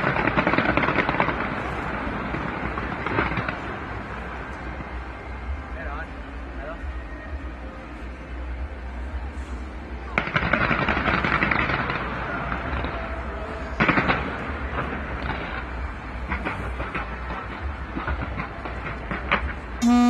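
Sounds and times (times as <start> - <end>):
fireworks crackling: 0.0 - 4.2.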